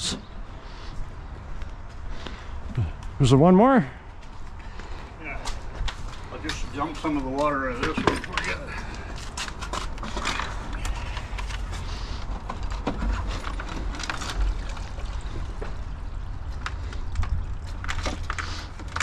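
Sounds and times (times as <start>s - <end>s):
water poured from pail: 13.4s - 16.0s.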